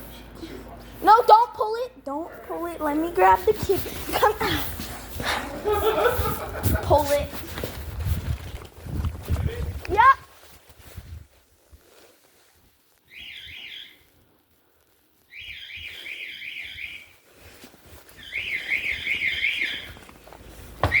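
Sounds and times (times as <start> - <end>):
fire alarm sweeping tone: 15.4 - 17.2, 18.2 - 20.0.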